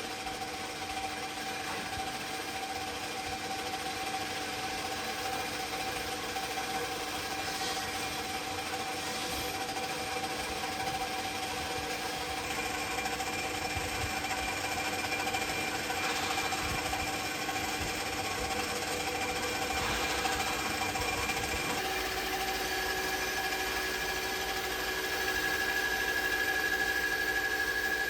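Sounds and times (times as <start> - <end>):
lathe hum with whining tones: 0.0 - 28.0.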